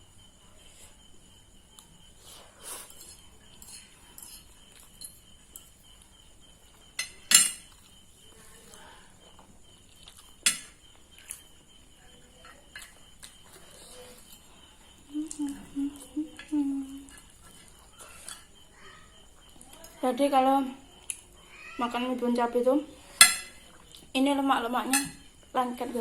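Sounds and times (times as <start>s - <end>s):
fork clinking against a plate: 7.0s - 7.9s, 10.4s - 10.8s, 12.4s - 13.0s, 23.2s - 23.7s, 24.9s - 25.3s.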